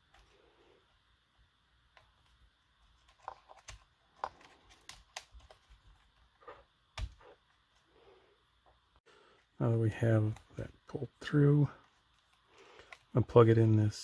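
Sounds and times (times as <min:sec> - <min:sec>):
small plastic parts clicking: 0:01.9 - 0:07.8, 0:11.8 - 0:13.2.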